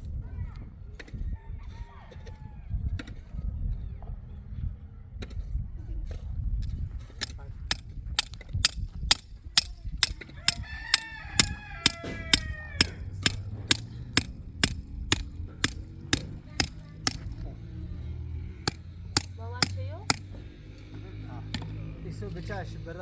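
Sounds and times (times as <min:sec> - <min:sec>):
hammer blows: 0:07.7 - 0:17.4, 0:18.6 - 0:20.4.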